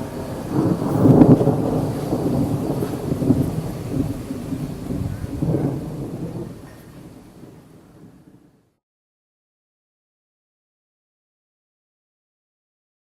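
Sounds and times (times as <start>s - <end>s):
thunder rolling: 0.0s - 8.4s.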